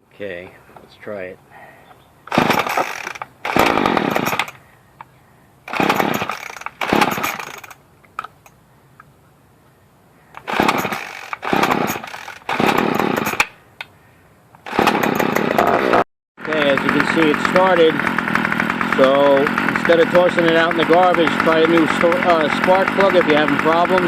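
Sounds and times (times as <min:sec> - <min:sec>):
string trimmer engine bursts: 0:02.3 - 0:04.6, 0:05.6 - 0:07.8, 0:10.4 - 0:13.6, 0:14.6 - 0:24.0.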